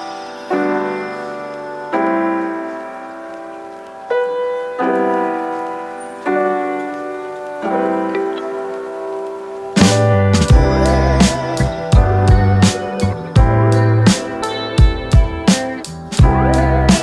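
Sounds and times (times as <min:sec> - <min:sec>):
slow piano chords: 0:00.0 - 0:17.0.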